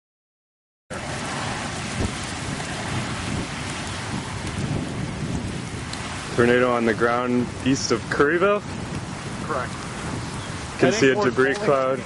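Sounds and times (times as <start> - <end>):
heavy rain hissing: 0.9 - 12.0
low thunder rumble: 0.9 - 12.0.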